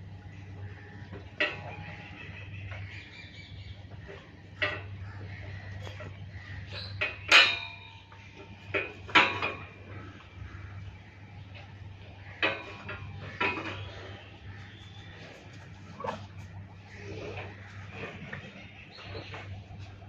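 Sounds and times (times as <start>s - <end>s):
sharp metallic clanks: 6.8s - 9.8s.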